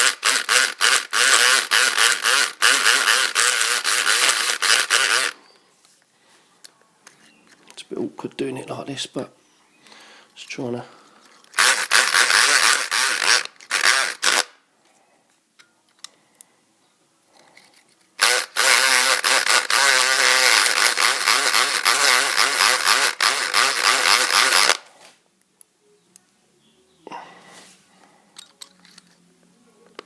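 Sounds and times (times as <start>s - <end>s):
electric pick gun buzzing: 0.0s - 5.4s, 11.5s - 14.6s, 18.2s - 24.9s.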